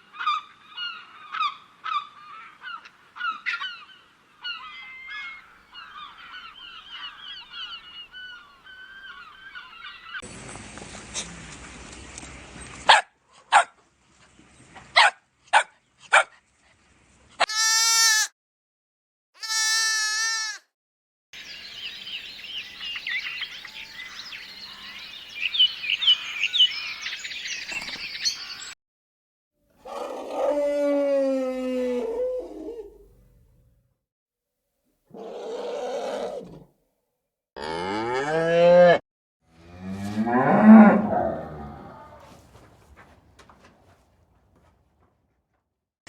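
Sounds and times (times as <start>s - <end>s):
bleats: 17.4s - 18.3s, 19.4s - 20.7s.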